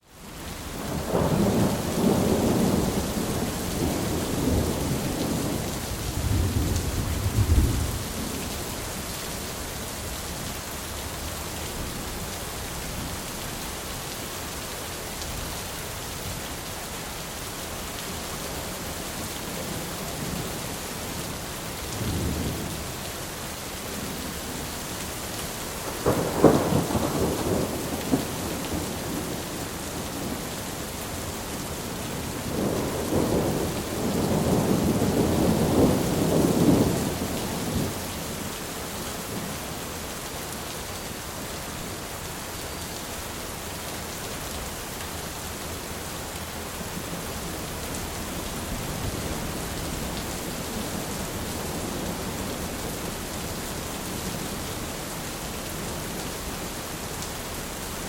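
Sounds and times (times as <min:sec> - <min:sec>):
heavy rain: 0:00.0 - 0:58.0
rolling thunder: 0:01.0 - 0:08.4, 0:25.8 - 0:30.5, 0:32.2 - 0:38.0.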